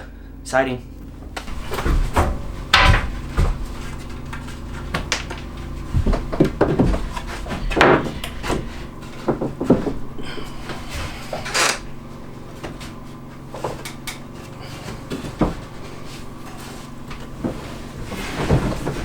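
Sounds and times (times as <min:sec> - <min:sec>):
wooden boards knocking: 0:01.4 - 0:10.1
boards scraping: 0:01.4 - 0:19.0.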